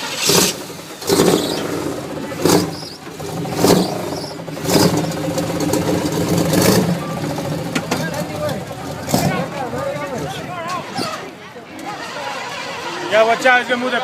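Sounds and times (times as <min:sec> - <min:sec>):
car engine revving: 0:00.0 - 0:11.1.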